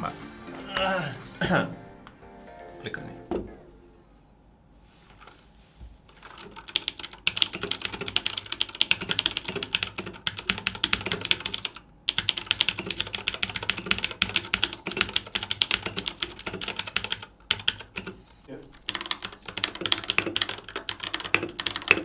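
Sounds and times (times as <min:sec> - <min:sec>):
fast typing on mechanical keyboard: 0:06.1 - 0:18.2, 0:18.8 - 0:22.0.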